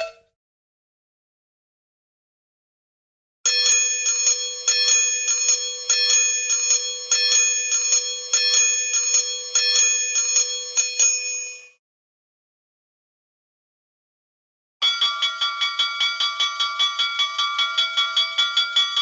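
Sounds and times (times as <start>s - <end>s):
cartoon bell ringing: 3.5s - 11.8s, 14.8s - 19.0s.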